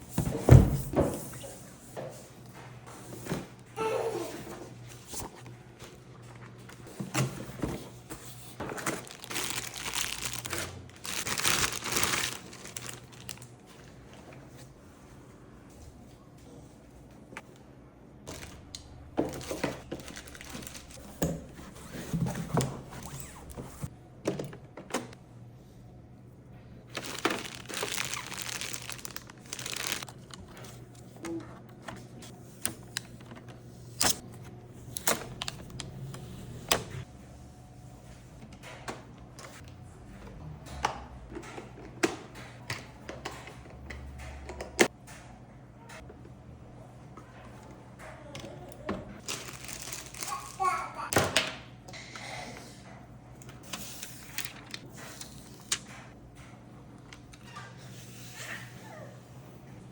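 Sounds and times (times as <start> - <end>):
packaging rustling: 7.5 - 14.0, 18.3 - 21.1, 26.9 - 31.0, 49.2 - 50.6
plastic wrap crinkling: 8.4 - 14.0, 18.3 - 21.1, 26.9 - 30.8, 49.2 - 50.8.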